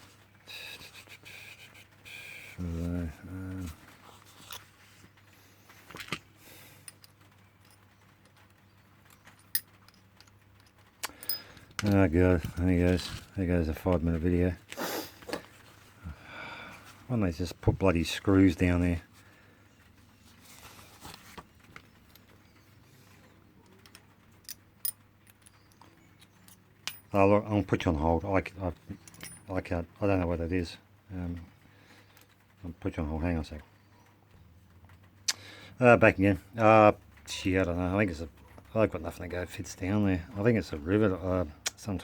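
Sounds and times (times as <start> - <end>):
small metal parts clicking: 6.8 - 13.9, 23.6 - 27.8, 28.8 - 29.6.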